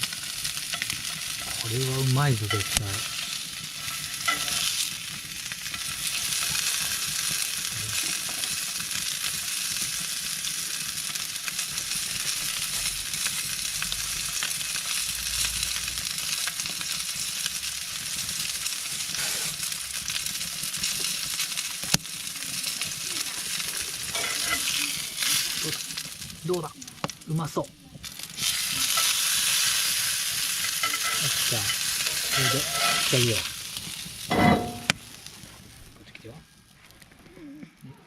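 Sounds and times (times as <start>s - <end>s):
steak sizzling: 0.0s - 37.3s.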